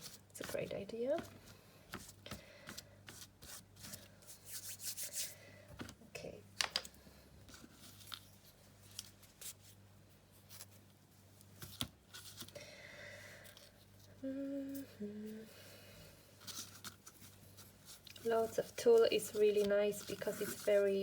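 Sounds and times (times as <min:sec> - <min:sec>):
faint electrical hum: 0:00.0 - 0:21.0
fabric rustling: 0:16.3 - 0:21.0.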